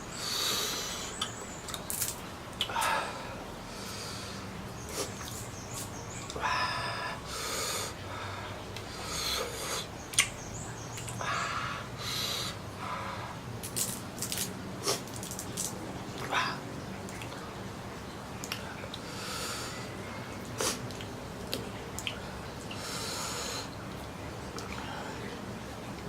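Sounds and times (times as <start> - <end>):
wet chewing and slurping: 13.6 - 16.3.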